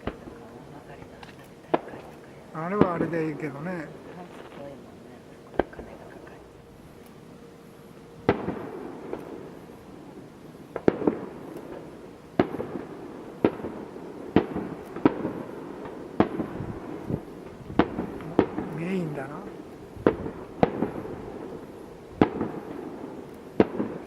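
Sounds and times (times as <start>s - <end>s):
firework shells bursting: 8.2s - 9.7s, 10.6s - 24.0s.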